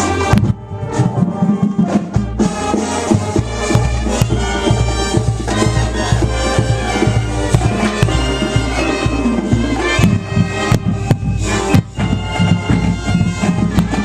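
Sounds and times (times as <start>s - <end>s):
low drum beats: 0.0s - 14.0s
wind instruments in sustained chords: 0.0s - 14.0s.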